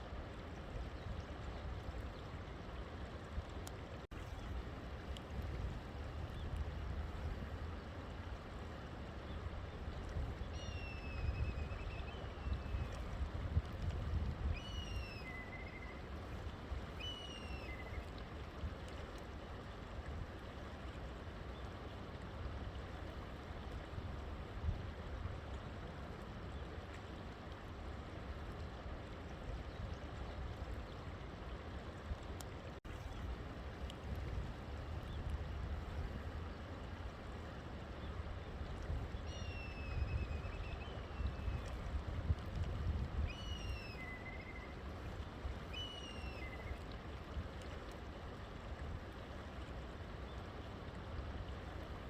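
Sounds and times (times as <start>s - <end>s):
river water running: 0.0s - 52.0s
bird whistling call: 14.6s - 16.0s, 17.0s - 18.0s, 43.3s - 44.7s, 45.7s - 46.7s.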